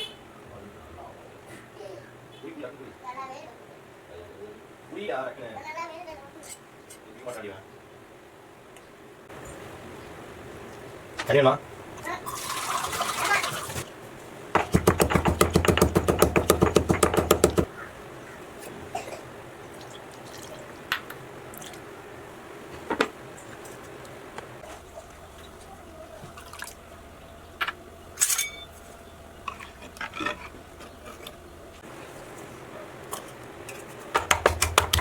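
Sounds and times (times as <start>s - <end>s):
utensils clinking and tapping: 14.6s - 17.7s, 27.6s - 31.4s.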